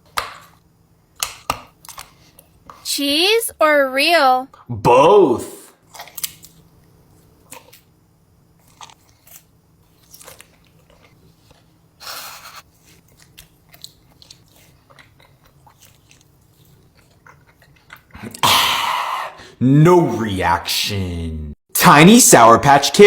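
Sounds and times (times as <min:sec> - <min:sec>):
person chewing crunchy food: 0:00.0 - 0:02.8, 0:05.8 - 0:18.8.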